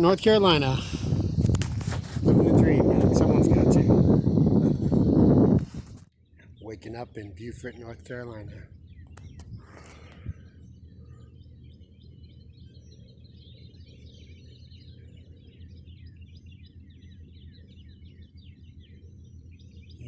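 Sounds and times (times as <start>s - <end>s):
steady low rumble: 0.0s - 6.0s, 6.6s - 13.7s
birds chirping and twittering: 0.0s - 20.0s.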